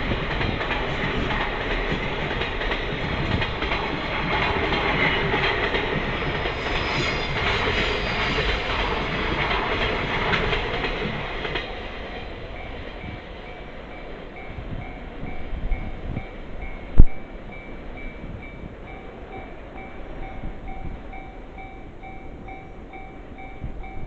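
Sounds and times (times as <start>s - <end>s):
train wheels clicking over rail joints: 0.0s - 24.0s.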